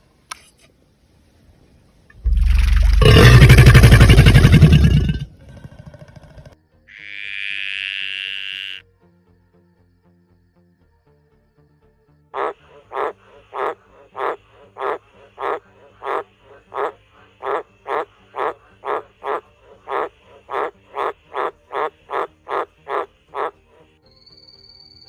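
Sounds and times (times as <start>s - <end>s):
frog croaking: 2.1s - 8.9s, 12.3s - 24.0s.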